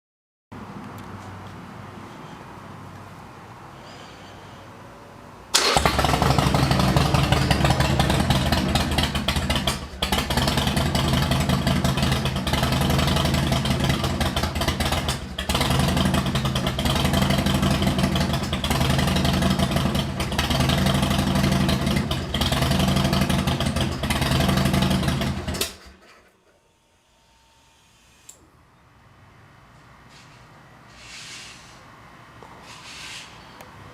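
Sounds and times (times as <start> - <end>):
motorcycle engine running: 5.6 - 26.0.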